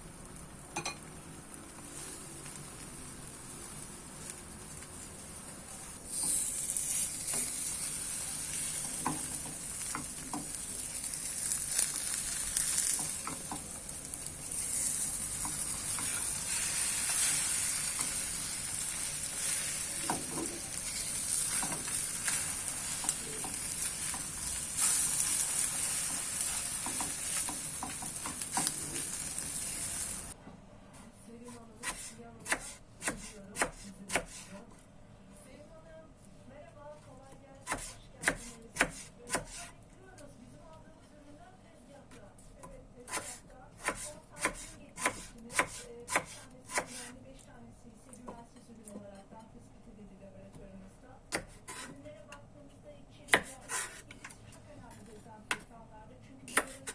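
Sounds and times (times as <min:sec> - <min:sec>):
food sizzling in a pan: 0:00.0 - 0:30.4.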